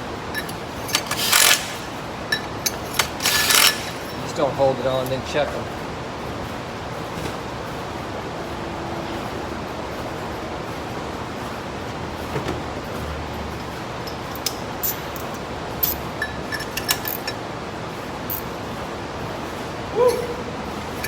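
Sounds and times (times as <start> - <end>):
metal tools clinking: 0.3 - 5.2, 14.0 - 17.4, 18.2 - 18.6.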